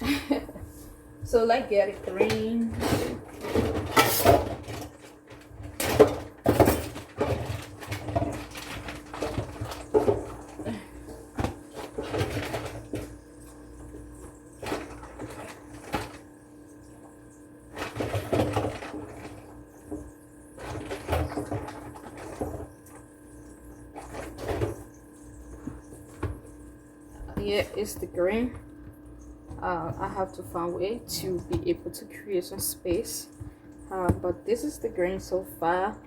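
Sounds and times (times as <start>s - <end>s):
steady low hum: 0.0s - 7.4s, 10.0s - 36.0s
kitchen knocks and clatter: 2.0s - 10.8s, 27.2s - 34.6s.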